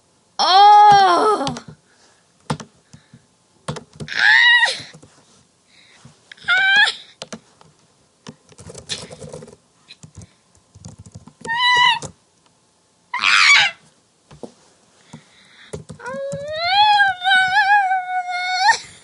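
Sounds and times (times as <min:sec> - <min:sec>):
person squealing: 0:00.4 - 0:01.6, 0:04.1 - 0:04.9, 0:06.4 - 0:07.1, 0:11.4 - 0:12.1, 0:13.2 - 0:13.8, 0:16.0 - 0:19.0.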